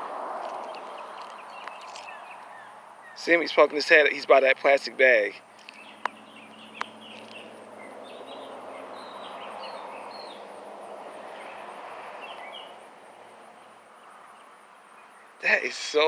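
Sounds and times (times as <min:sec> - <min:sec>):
vehicle passing: 0:00.0 - 0:03.2, 0:05.4 - 0:15.1
small birds chirping: 0:00.4 - 0:16.0.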